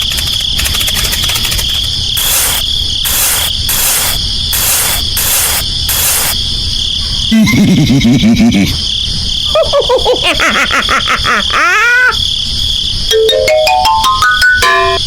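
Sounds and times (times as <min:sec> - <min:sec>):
crickets chirring: 0:00.0 - 0:15.0
hissing pulses: 0:02.2 - 0:06.4.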